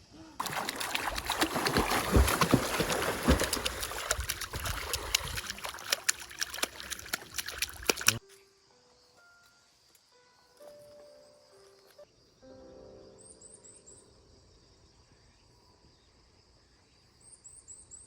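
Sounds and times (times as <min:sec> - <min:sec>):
stream water splashing: 0:00.4 - 0:08.2
soft music notes: 0:08.2 - 0:14.1.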